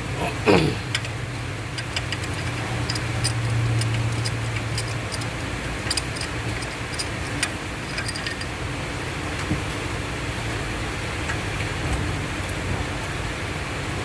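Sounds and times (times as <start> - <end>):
steady low hum: 0.0 - 11.0
ratchet clicking: 0.9 - 8.6.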